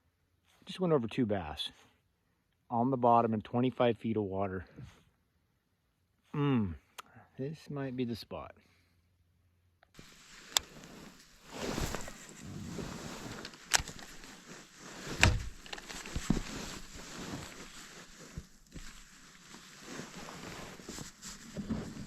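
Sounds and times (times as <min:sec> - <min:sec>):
knocks and clicks of gear: 0:13.2 - 0:14.3, 0:15.0 - 0:16.8.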